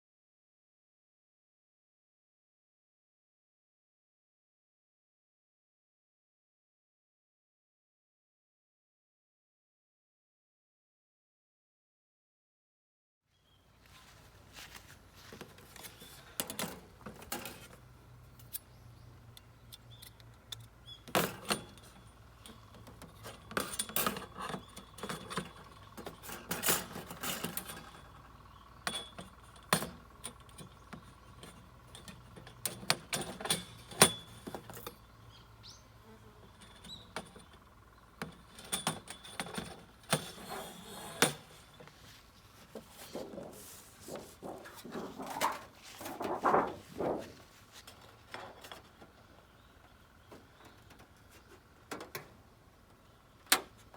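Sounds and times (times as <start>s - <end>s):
metal parts clinking together: 20.0s - 28.0s.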